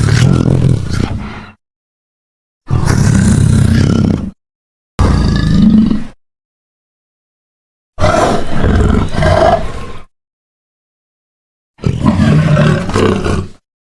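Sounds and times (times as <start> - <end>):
cartoon dinosaur roar: 2.7 - 4.4, 5.0 - 6.2, 8.0 - 10.1, 11.8 - 13.6.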